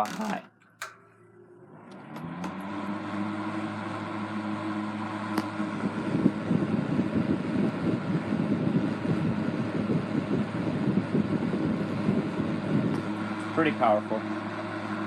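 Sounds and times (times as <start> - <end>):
fan motor hum: 0.0 - 15.0.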